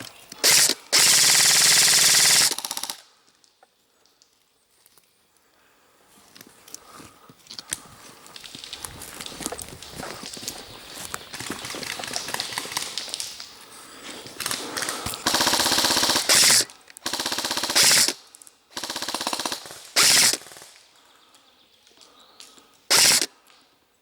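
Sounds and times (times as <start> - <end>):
airsoft gun automatic fire: 0.4 - 3.0, 14.8 - 18.2, 18.8 - 20.8, 22.9 - 23.3.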